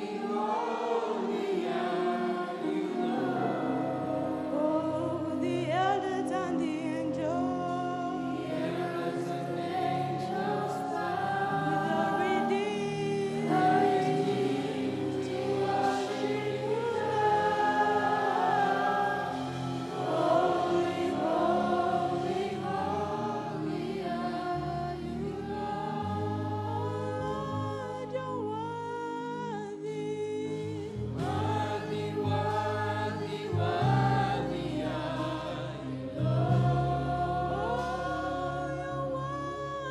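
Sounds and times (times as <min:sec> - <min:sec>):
choir singing gospel music: 0:00.0 - 0:39.9
instrumental accompaniment with bass: 0:30.8 - 0:39.8.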